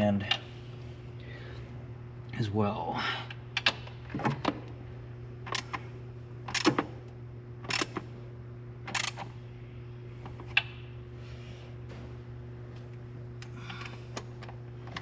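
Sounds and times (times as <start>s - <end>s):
steady low hum: 0.0s - 15.0s
ratchet clicking: 7.7s - 8.0s, 8.9s - 9.2s.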